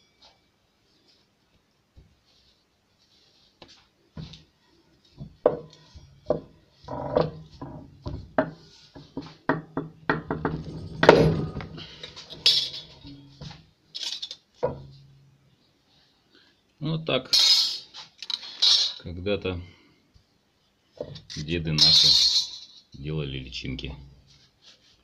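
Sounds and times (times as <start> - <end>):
low steady hum: 10.1 - 13.8.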